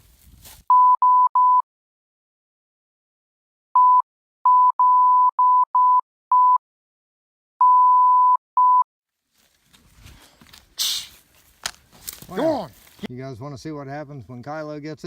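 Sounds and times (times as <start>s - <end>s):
censor beep tone: 0.7s - 1.6s, 3.8s - 6.6s, 7.6s - 8.8s.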